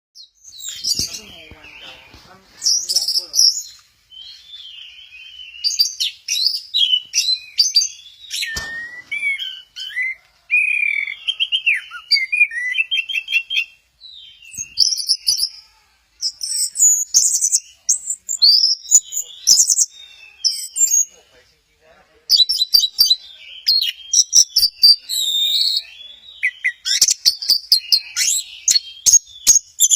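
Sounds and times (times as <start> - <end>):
thump: 8.4 - 9.4.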